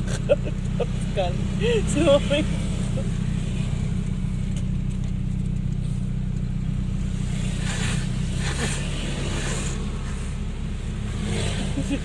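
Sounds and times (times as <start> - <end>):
car engine and road hum: 0.0 - 12.0.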